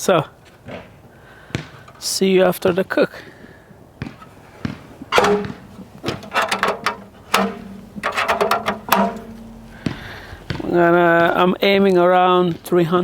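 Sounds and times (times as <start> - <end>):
metal parts clanking on a grill: 5.1 - 10.5.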